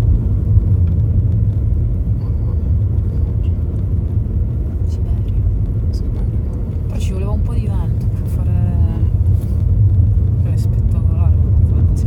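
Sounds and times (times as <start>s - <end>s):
car driving on road: 0.0s - 12.0s.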